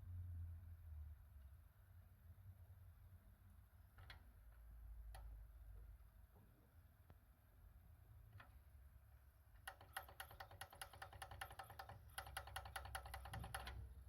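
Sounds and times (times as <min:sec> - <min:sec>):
cd player clicking mechanically: 0:09.6 - 0:13.9.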